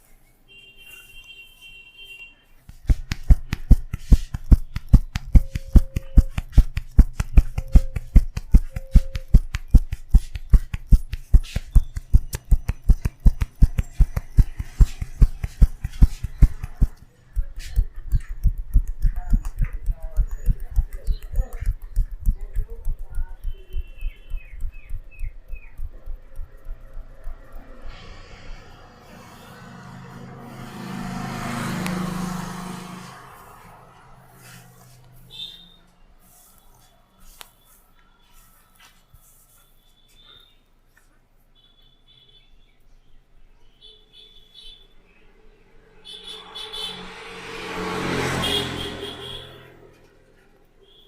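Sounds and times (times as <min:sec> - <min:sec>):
hands tapping on head: 0:02.7 - 0:27.7.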